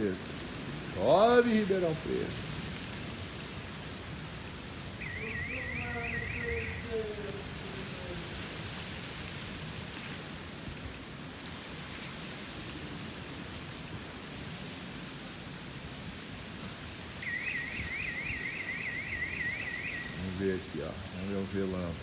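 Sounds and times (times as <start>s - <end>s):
light rain falling: 0.0s - 22.0s
electronic alarm rising tone: 17.2s - 20.2s.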